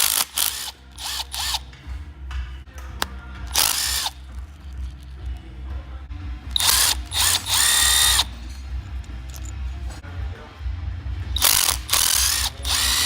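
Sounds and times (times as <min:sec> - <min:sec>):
power tool spinning bolts: 0:00.0 - 0:01.6, 0:03.5 - 0:04.3, 0:06.5 - 0:09.5, 0:11.4 - 0:13.0.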